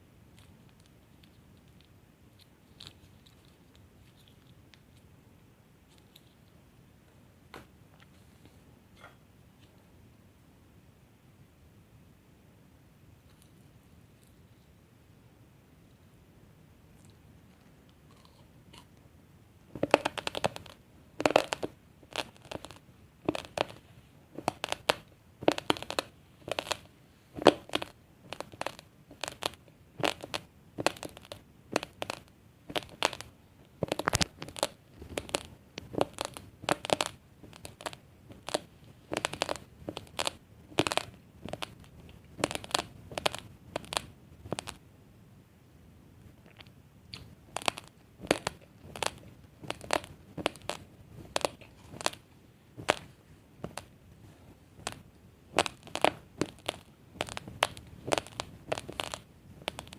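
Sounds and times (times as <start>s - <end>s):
chewing crunchy rice grains: 18.0s - 18.9s, 19.8s - 23.8s, 24.4s - 44.8s, 47.6s - 52.2s, 55.6s - 59.9s.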